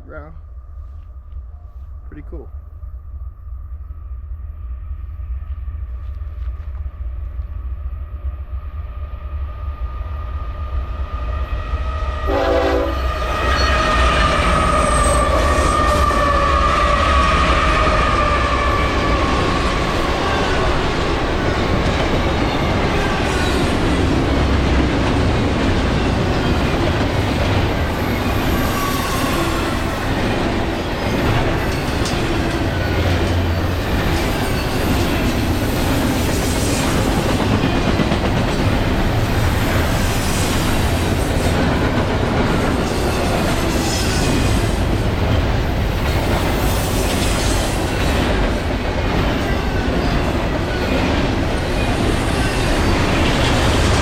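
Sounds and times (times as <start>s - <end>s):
freight train rumbling: 0.0s - 54.0s.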